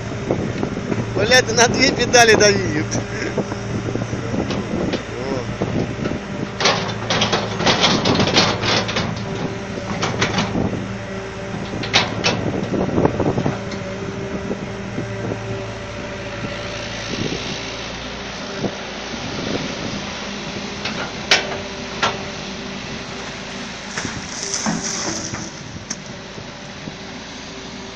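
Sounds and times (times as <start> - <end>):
excavator diesel engine under load: 0.0 - 27.9
sharp metal knocks and clanks: 6.6 - 10.5.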